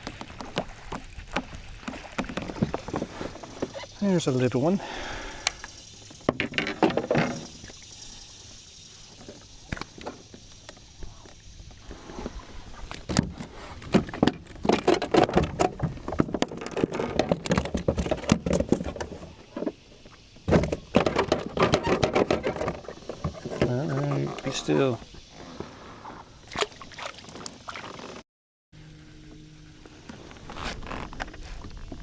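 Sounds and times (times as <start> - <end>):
fish thrashing against kayak hull: 0.0 - 3.9, 12.3 - 19.8.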